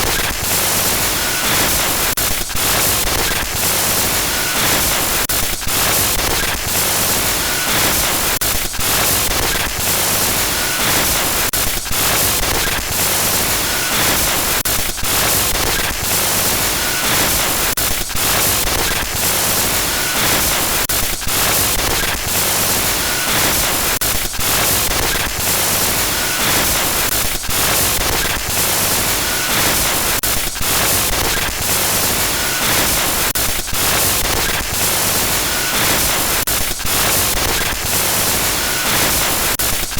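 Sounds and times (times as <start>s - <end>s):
harsh static hiss: 0.0s - 39.9s.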